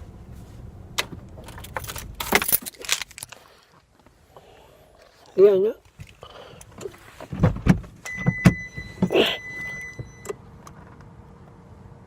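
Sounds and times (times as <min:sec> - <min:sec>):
car door clicks and thumps: 0:06.7 - 0:11.1
car warning tone: 0:08.0 - 0:10.4.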